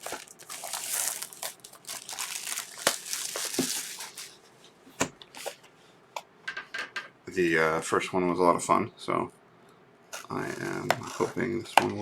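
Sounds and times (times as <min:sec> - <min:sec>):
plastic wrapping crinkling and tearing: 0:00.0 - 0:04.4.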